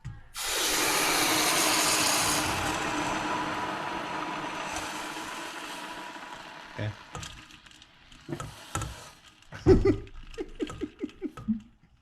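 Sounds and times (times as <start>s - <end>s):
hot metal sizzling in liquid: 0.4s - 9.7s.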